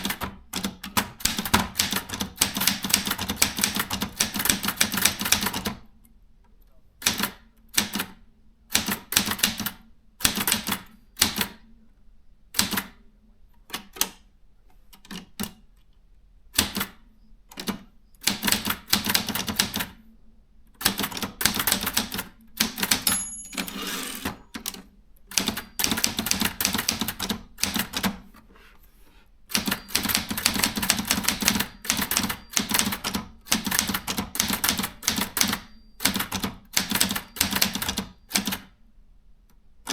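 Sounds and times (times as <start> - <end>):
typewriter typing: 0.0 - 5.8, 20.8 - 28.2, 29.5 - 38.7.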